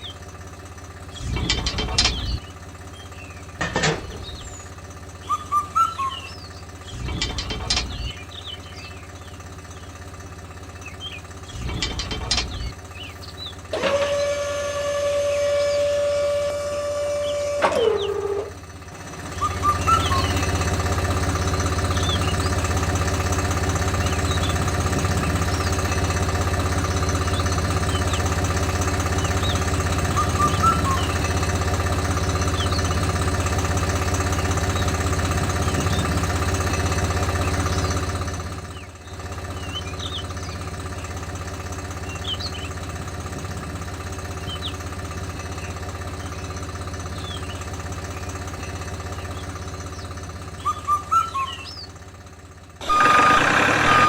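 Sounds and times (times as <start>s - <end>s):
small motor humming: 1.1s - 2.5s, 5.8s - 8.2s, 10.9s - 18.6s, 52.8s - 54.0s
falling whistle-like tone: 19.4s - 20.5s, 30.2s - 31.2s, 50.6s - 51.7s.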